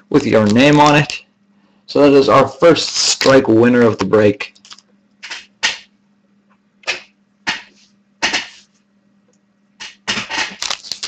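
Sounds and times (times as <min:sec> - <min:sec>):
card wrappers rustling and ripping: 0:00.1 - 0:01.2, 0:02.7 - 0:04.8, 0:10.1 - 0:11.0.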